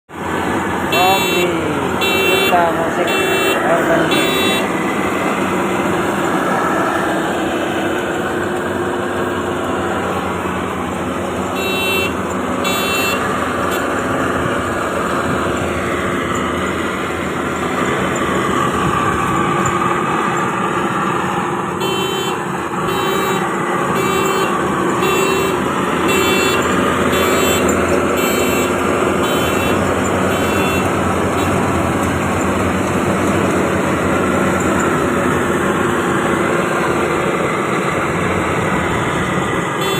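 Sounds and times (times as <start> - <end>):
combine harvester engine running: 0.1 - 39.9
short high-pitched beeps: 1.0 - 4.7, 24.0 - 31.5.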